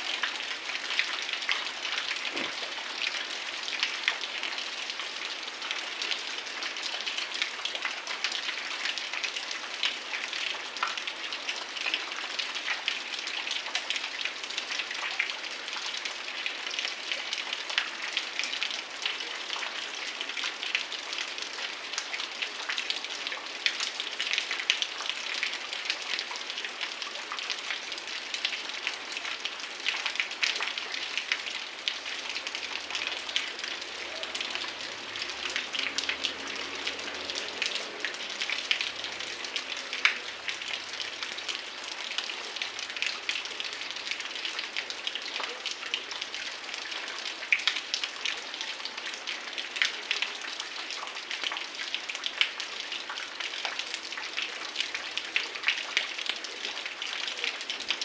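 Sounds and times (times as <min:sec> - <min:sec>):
heavy rain falling: 0:00.0 - 0:13.2, 0:16.2 - 0:51.4.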